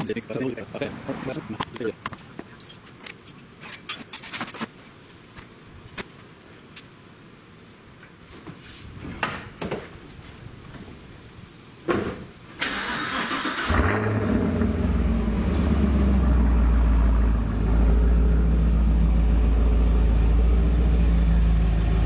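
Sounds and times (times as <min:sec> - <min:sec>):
car engine cranking and idling: 0:12.6 - 0:22.0.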